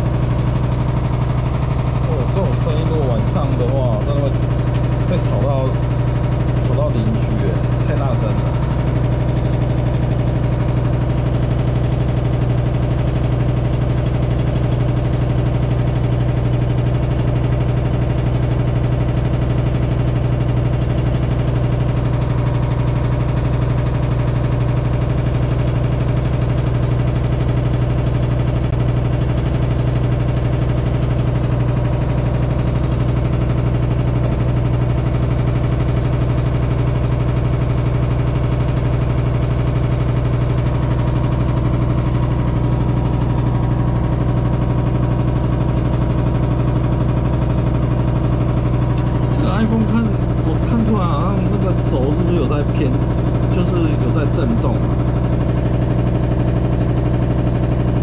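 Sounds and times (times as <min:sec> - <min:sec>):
washing machine spinning: 0:00.0 - 0:58.0.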